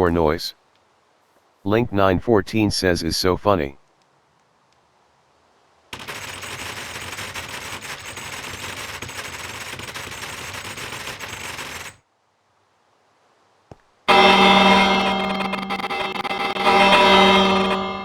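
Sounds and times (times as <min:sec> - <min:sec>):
dense crackling rattle of clicks: 0:06.0 - 0:12.0.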